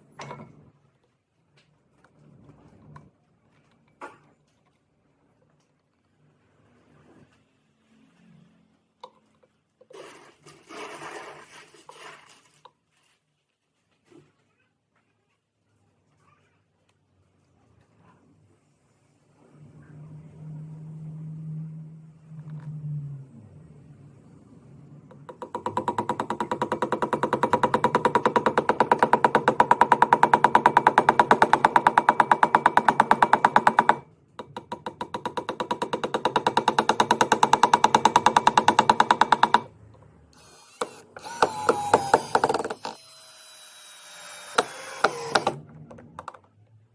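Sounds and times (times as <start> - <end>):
power drill hammering into wall: 25.1 - 39.7, 40.4 - 45.6.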